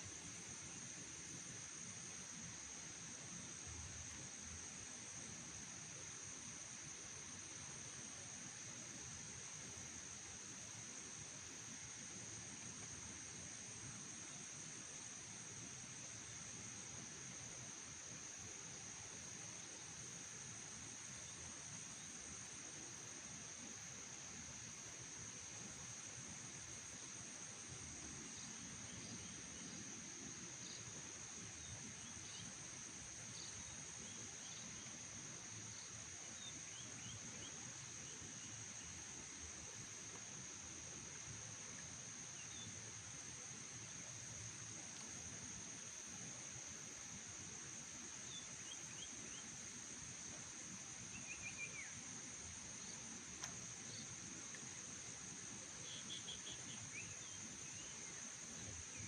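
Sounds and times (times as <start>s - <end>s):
insect trill: 0.0s - 59.0s
low background hiss: 0.0s - 59.0s.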